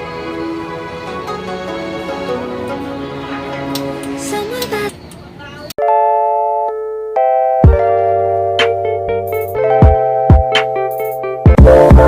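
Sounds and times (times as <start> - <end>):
electronic music: 7.6 - 12.0.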